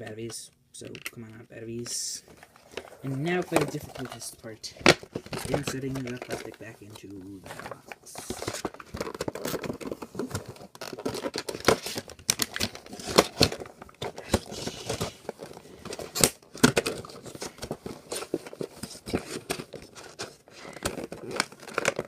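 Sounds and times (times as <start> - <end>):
plastic packaging crinkling: 2.4 - 22.0.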